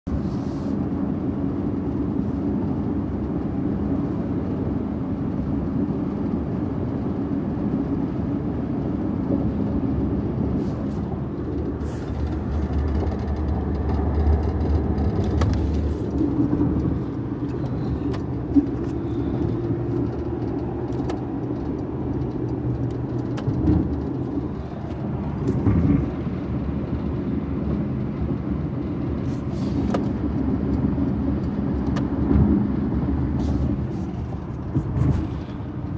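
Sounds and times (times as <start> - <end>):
low car running sound: 0.1 - 35.9.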